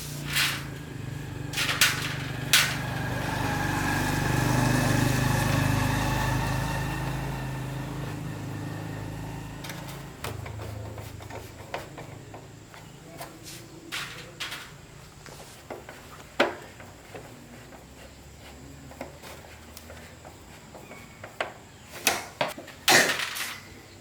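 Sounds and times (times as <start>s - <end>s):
motorbike engine running: 0.0s - 13.1s.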